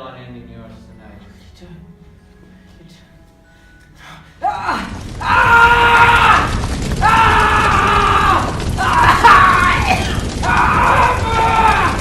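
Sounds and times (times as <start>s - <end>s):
man screaming: 4.4s - 12.0s.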